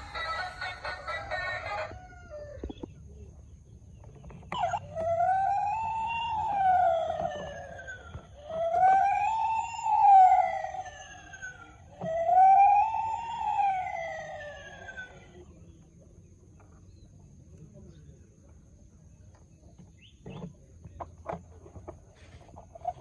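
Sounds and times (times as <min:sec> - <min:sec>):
toy siren wailing: 0:00.0 - 0:02.7, 0:04.5 - 0:15.6.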